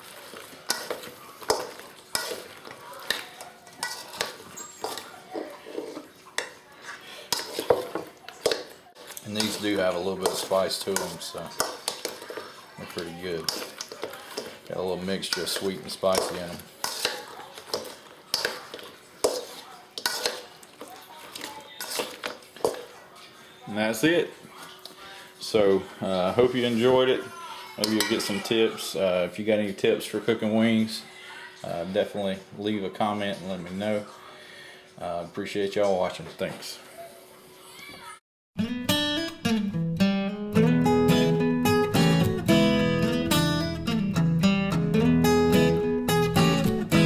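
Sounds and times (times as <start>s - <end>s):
utensil clinking and scraping container: 0.0s - 23.0s.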